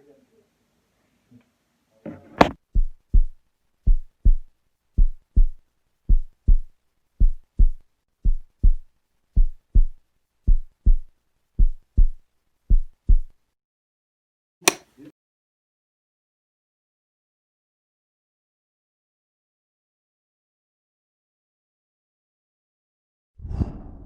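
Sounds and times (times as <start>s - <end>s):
heartbeat thumps: 2.4s - 13.3s.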